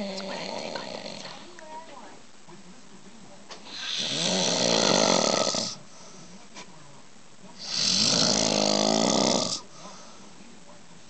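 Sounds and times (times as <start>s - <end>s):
man snoring loudly: 3.7s - 5.8s, 7.6s - 9.6s.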